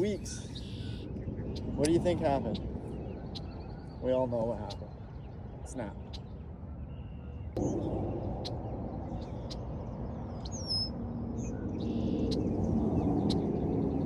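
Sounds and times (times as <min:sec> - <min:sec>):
birds chirping: 0:00.0 - 0:14.0
low steady rumble: 0:00.0 - 0:14.0.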